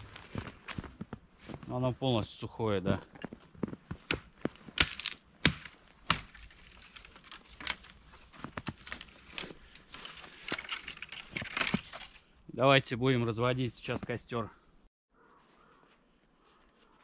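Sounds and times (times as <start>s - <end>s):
knife chopping branches: 4.0s - 8.0s
wood cracking and snapping: 4.0s - 12.3s.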